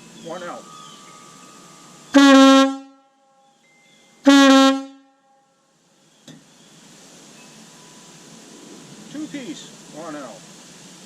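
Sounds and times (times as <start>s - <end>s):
air horn blasts: 2.1s - 3.4s, 4.2s - 5.5s.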